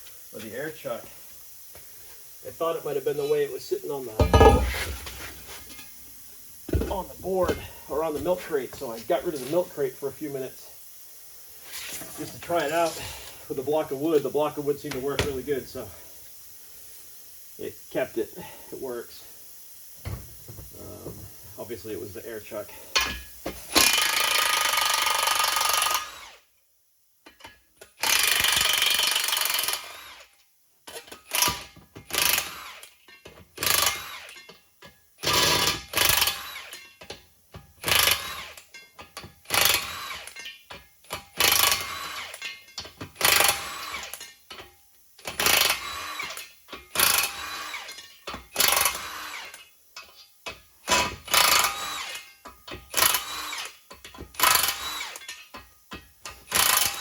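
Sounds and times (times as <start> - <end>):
impact wrench running on bolts: 4.2 - 5.3, 23.7 - 26.4, 28.0 - 30.2, 30.9 - 32.8, 33.6 - 34.4, 35.2 - 36.8, 37.8 - 38.6, 39.4 - 40.4, 41.3 - 42.4, 43.2 - 44.2, 45.2 - 49.6, 50.9 - 52.2, 52.9 - 53.7, 54.3 - 55.2, 56.5 - 57.0.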